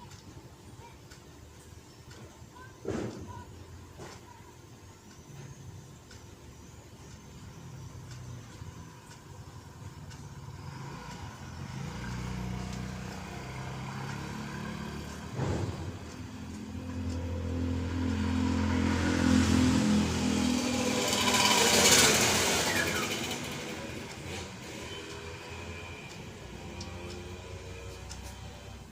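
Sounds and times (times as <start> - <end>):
vehicle engine running: 6.9 - 28.9.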